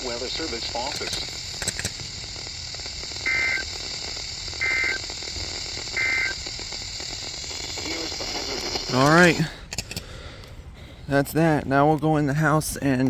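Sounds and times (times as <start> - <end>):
screechy two-tone digital data warble: 0.0 - 9.4
radio hiss: 0.0 - 10.0.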